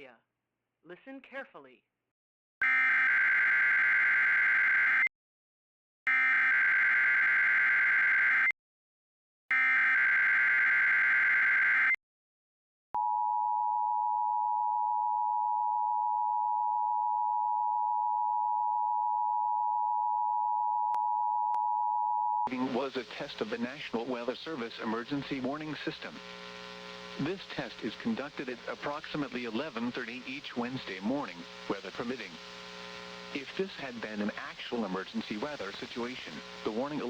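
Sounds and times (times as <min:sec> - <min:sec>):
steady warning alarm tone: 0:06.1 - 0:08.5, 0:09.5 - 0:12.0.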